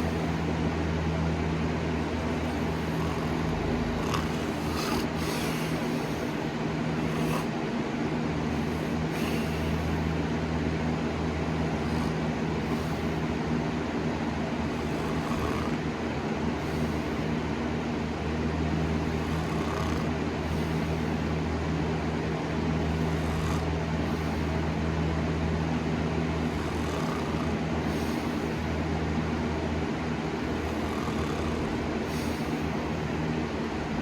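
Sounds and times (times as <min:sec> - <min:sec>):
person snoring: 0:00.0 - 0:00.5, 0:01.9 - 0:07.6, 0:08.4 - 0:10.4, 0:11.2 - 0:13.4, 0:14.6 - 0:15.9, 0:18.6 - 0:21.3, 0:22.8 - 0:24.6, 0:26.3 - 0:28.8, 0:30.4 - 0:33.0
steady low hum: 0:00.0 - 0:34.0.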